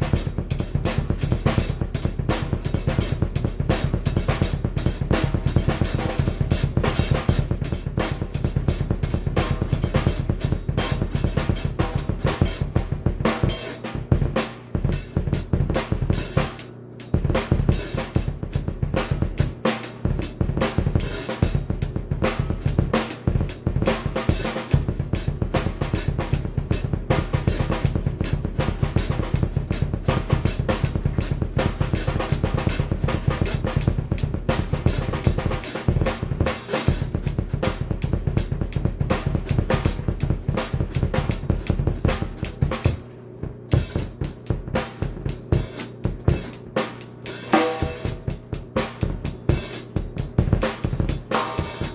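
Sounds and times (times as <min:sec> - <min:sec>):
cymbals: 0:00.0 - 0:51.9
rapid kick drum strokes: 0:00.0 - 0:51.9.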